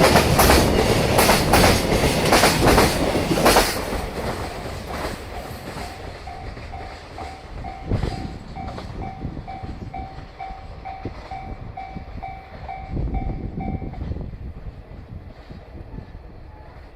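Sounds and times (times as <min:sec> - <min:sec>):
train wheels clacking over rail joints: 0:00.0 - 0:11.5
level crossing warning bell: 0:05.7 - 0:14.0.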